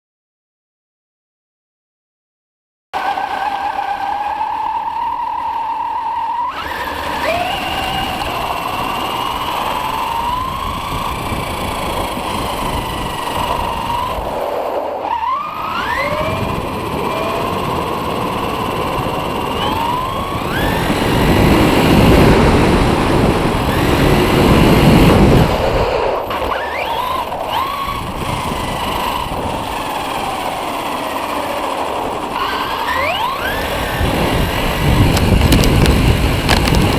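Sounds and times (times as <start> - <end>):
electric motor whine: 3.0 - 36.9
heavy rumble: 33.5 - 36.9.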